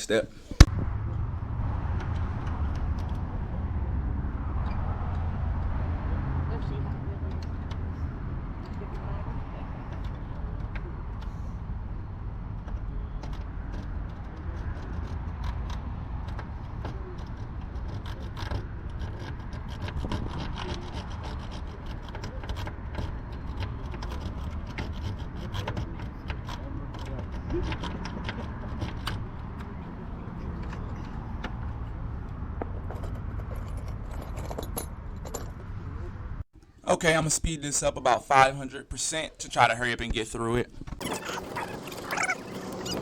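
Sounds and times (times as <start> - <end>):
lock pick scraping and clicking: 12.6 - 35.7.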